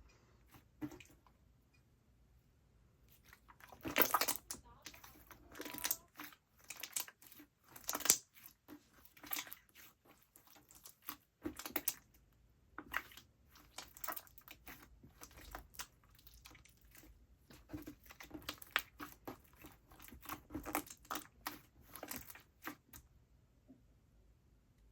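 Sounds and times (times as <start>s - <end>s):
slime squished by hand crackling: 3.3s - 12.1s.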